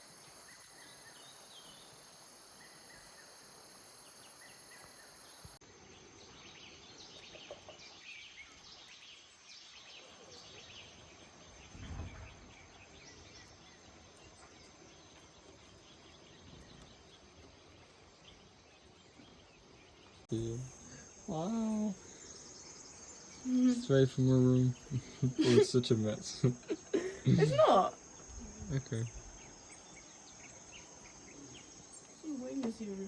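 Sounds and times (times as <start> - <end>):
high insect drone: 0.0 - 7.0, 20.3 - 33.0
low thump: 11.6 - 12.9.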